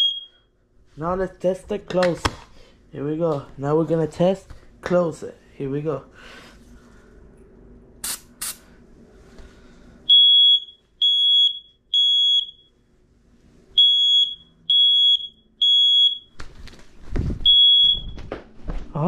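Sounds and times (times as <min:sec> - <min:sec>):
smoke alarm beeping: 0:00.0 - 0:00.5, 0:10.1 - 0:12.8, 0:13.7 - 0:16.4, 0:17.4 - 0:18.2.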